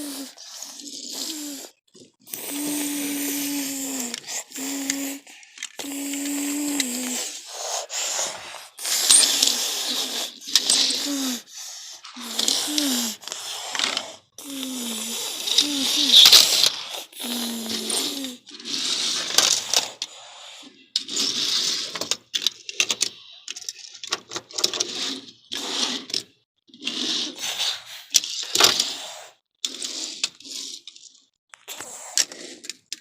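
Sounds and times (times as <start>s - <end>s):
person making engine noises: 0.0s - 18.5s
toy cars rolling on a surface: 0.0s - 33.0s.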